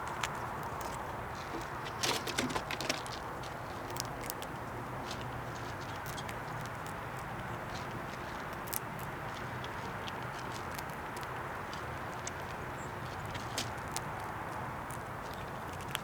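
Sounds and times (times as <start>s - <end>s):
sharp clicks and scratches: 0.0s - 4.6s
squirrel cracking peanuts: 0.0s - 16.0s.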